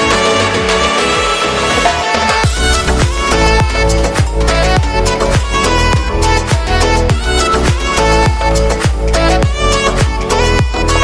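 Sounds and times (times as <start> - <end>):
background music with steady beat: 0.0 - 11.0
deep kick drum: 2.4 - 10.8.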